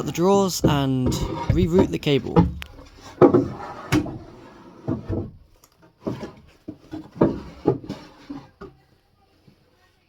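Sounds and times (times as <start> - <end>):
wooden drawer knocks: 0.5 - 4.3
drawers sliding scrapes: 0.6 - 8.7.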